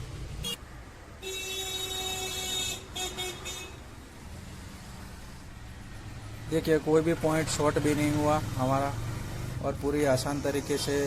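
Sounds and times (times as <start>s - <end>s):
low traffic rumble: 0.0s - 11.0s
vehicle horn honking: 1.2s - 3.8s.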